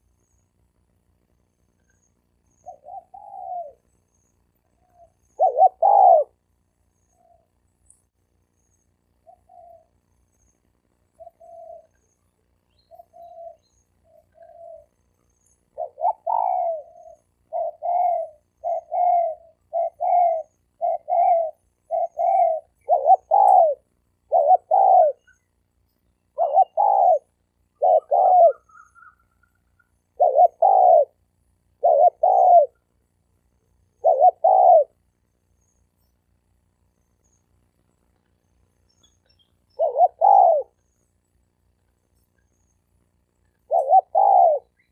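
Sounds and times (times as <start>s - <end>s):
doves cooing: 2.6s - 3.9s, 4.6s - 7.6s, 9.2s - 10.1s, 11.1s - 12.3s, 12.9s - 25.6s, 26.3s - 32.9s, 33.9s - 35.1s, 39.0s - 40.8s, 43.5s - 44.9s.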